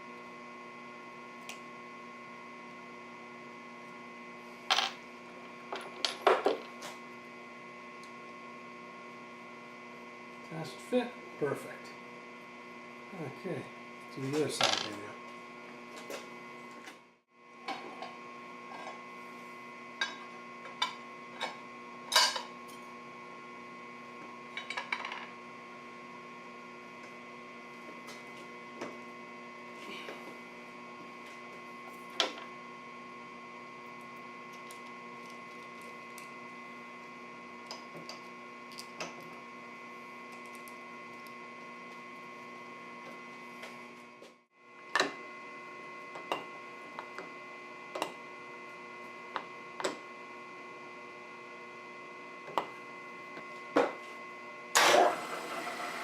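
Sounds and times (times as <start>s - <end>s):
machine tool motor hum: 54.8s - 56.0s.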